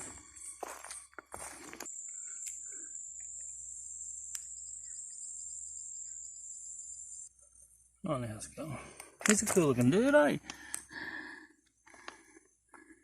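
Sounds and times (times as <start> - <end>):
high-pitched insect buzz: 0.0 - 8.0.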